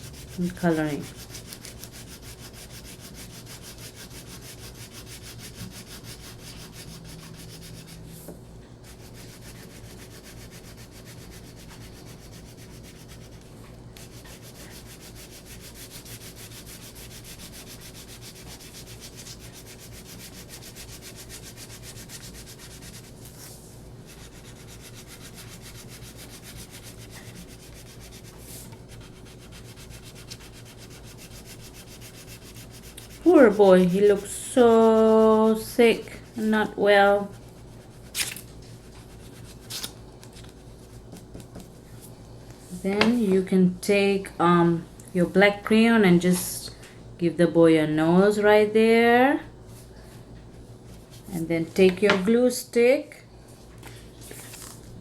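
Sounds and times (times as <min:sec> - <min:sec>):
wax crayon scribbling on paper: 0:00.0 - 0:08.0, 0:08.9 - 0:13.4, 0:14.0 - 0:23.1, 0:24.1 - 0:38.2.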